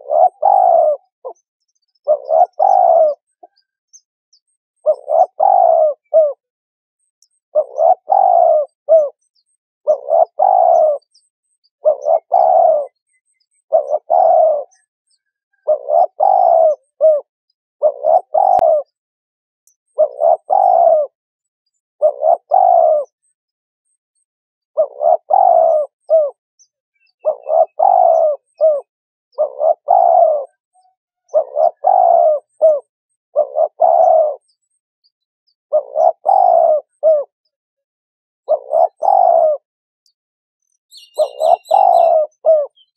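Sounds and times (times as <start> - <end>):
dove cooing: 0.0 - 3.7, 4.8 - 6.5, 7.5 - 9.2, 9.8 - 19.0, 19.9 - 21.2, 22.0 - 23.3, 24.8 - 26.4, 27.0 - 34.8, 35.7 - 37.4, 38.4 - 39.7, 40.9 - 42.9.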